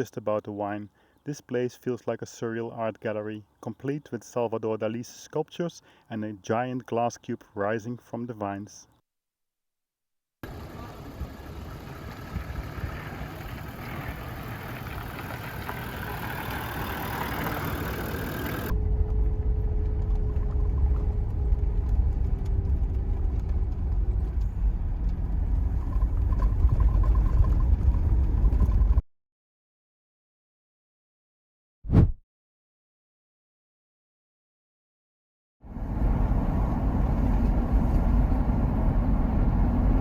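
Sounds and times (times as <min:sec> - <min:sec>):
vehicle engine and road rumble: 0:10.4 - 0:29.0, 0:35.7 - 0:40.0.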